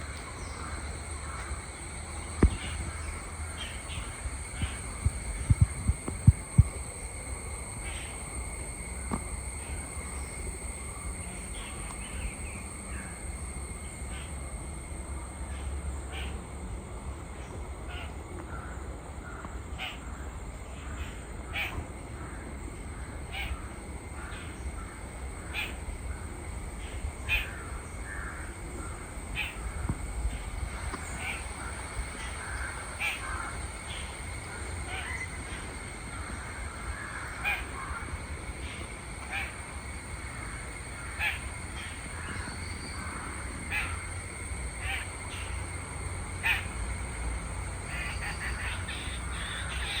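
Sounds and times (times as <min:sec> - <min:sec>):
birds calling: 0:00.0 - 0:06.7, 0:47.8 - 0:50.0
steady high-pitched whine: 0:00.0 - 0:50.0.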